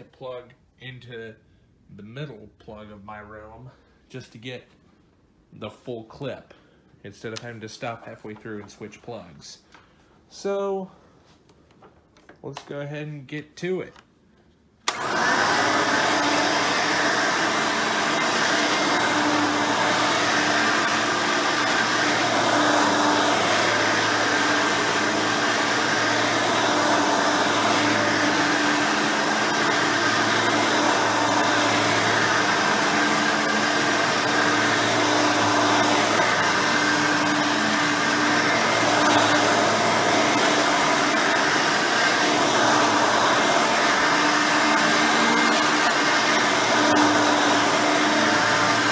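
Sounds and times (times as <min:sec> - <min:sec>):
upright vacuum cleaner running: 0:14.8 - 0:48.9.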